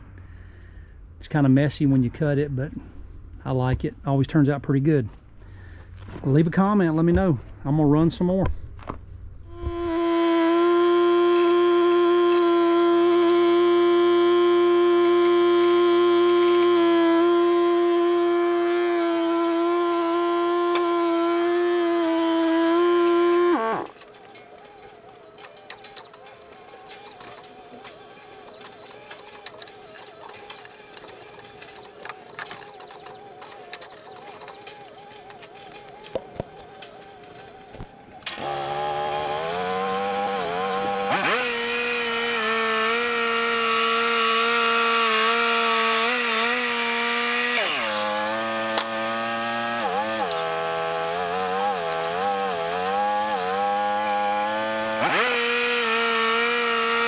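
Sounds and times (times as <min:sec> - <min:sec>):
band blade sawing log: 0:09.5 - 0:24.6, 0:25.3 - 0:36.2, 0:38.2 - 0:57.0
sawmill engine running: 0:09.5 - 0:57.0.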